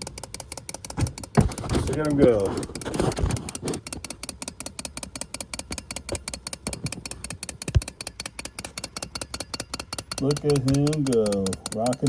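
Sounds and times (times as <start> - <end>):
wind-up toy clicking: 0.0 - 1.4, 2.0 - 12.0
toy knock: 9.2 - 12.0.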